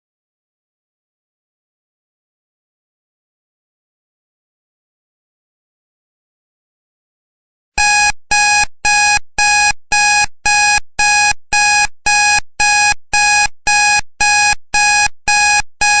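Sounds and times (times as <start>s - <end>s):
timer alarm beeping: 7.8s - 16.0s.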